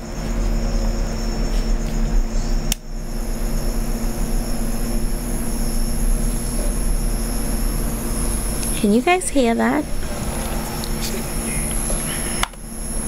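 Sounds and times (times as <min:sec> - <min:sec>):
electric nail drill whining: 0:02.6 - 0:13.0.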